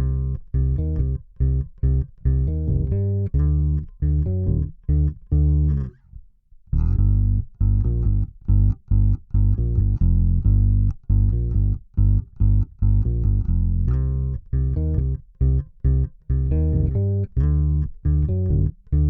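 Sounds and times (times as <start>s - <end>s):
electric bass plucked notes: 0.0s - 19.0s.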